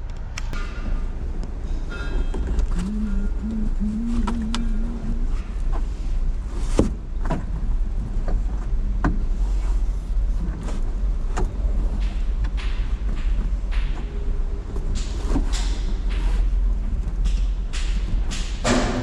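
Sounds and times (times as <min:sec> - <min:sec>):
steady low hum: 0:00.0 - 0:19.0
clicks and knocks of car trim: 0:06.7 - 0:07.6.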